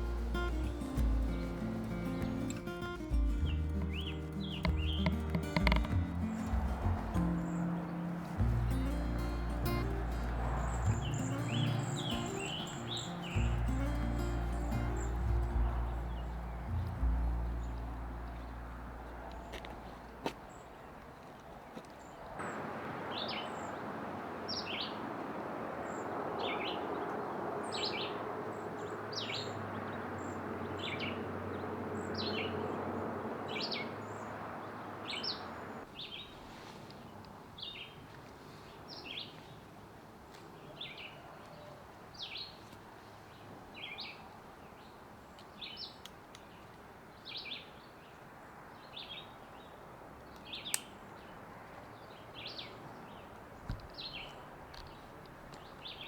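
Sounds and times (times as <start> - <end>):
bird calling with sharp notes: 0.0 - 18.6
steady rushing noise: 0.0 - 19.3.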